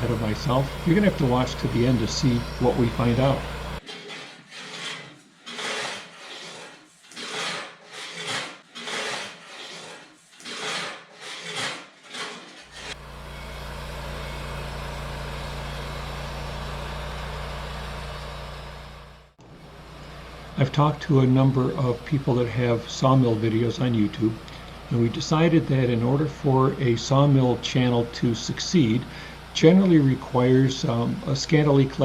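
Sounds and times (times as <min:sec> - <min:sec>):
rasping strokes on wood: 0:00.0 - 0:13.0
band sawmill running: 0:00.0 - 0:32.0.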